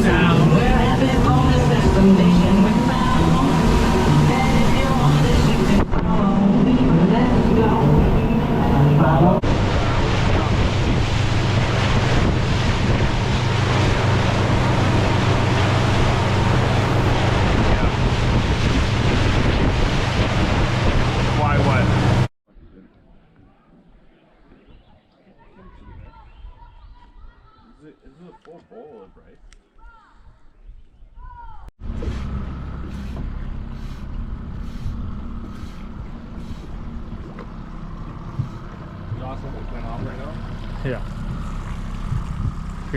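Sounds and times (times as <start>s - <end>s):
boat engine drone: 0.0s - 22.3s, 31.8s - 42.9s
water rushing past hull: 0.0s - 22.3s, 31.8s - 42.9s
wind buffeting microphone: 0.0s - 22.3s, 24.6s - 27.5s, 32.7s - 42.9s.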